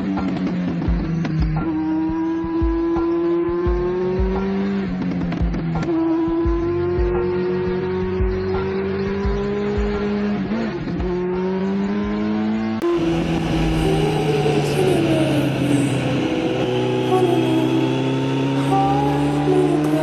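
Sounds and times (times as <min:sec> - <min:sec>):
motorcycle engine running: 0:00.0 - 0:20.0.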